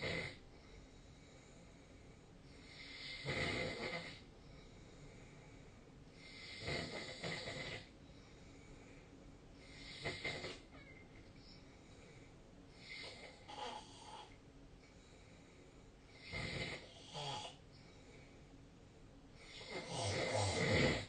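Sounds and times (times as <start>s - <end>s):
person snoring: 2.6s - 4.2s, 6.2s - 7.9s, 9.6s - 10.6s, 12.8s - 14.4s, 16.2s - 17.6s, 19.4s - 21.0s.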